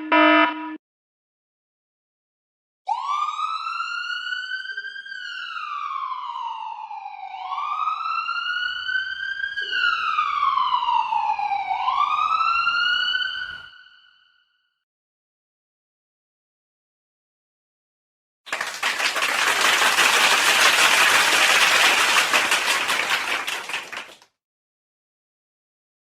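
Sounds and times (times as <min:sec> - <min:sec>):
emergency siren wailing: 0:00.0 - 0:00.8, 0:02.9 - 0:14.3.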